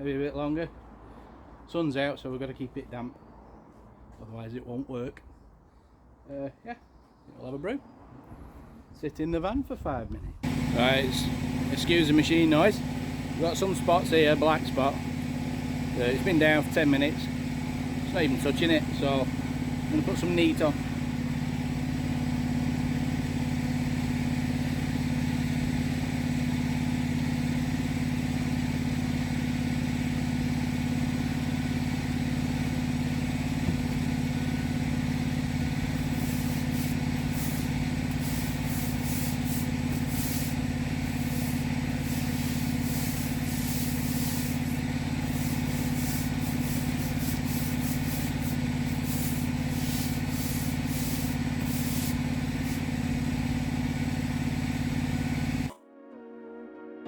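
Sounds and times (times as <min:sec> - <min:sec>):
cleaning machine engine running: 0:10.4 - 0:55.7
short spraying hisses: 0:10.4 - 0:55.7.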